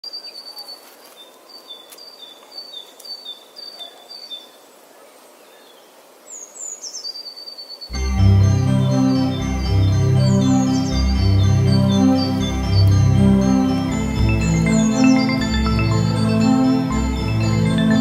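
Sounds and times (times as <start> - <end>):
organ-like keyboard music: 7.9 - 18.0.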